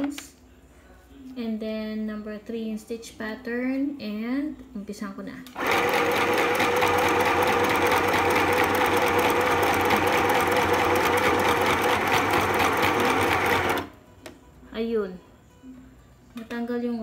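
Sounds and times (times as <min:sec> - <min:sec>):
sewing machine stitching: 0:05.6 - 0:13.9.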